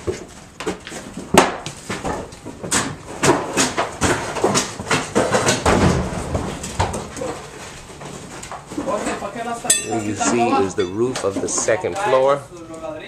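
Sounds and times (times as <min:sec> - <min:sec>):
wood cracking and knocking: 0:00.0 - 0:09.2.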